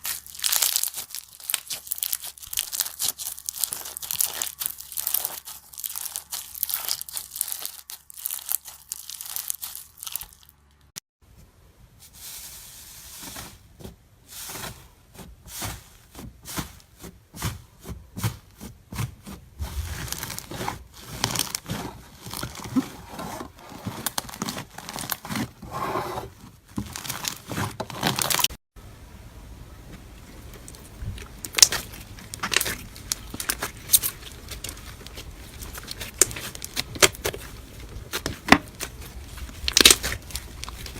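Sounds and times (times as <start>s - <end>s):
slime crackling and popping: 0.0s - 10.6s, 19.7s - 22.7s, 30.6s - 40.9s.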